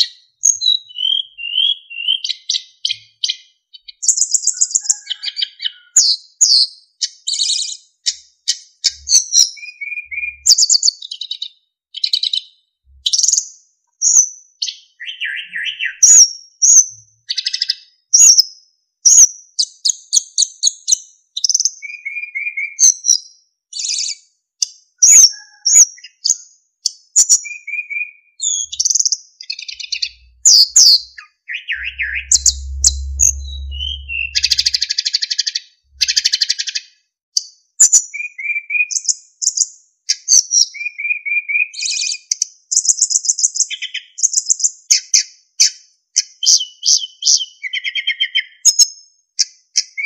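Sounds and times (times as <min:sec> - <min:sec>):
flycatcher singing: 0:29.7 - 0:34.8.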